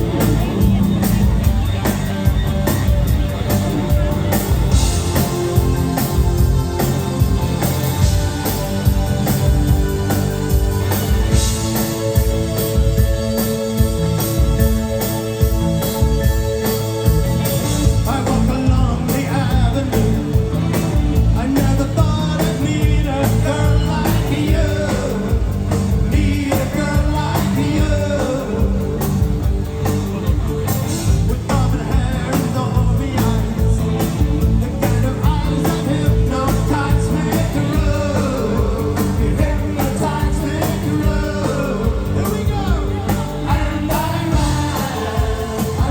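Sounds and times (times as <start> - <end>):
rock band playing: 0.0 - 45.9
lead vocal singing: 17.8 - 29.5, 31.1 - 45.9.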